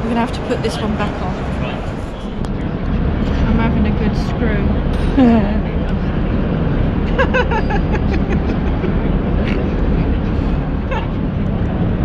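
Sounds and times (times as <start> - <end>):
crowd chatter: 0.0 - 12.0
hall rumble: 0.0 - 12.0.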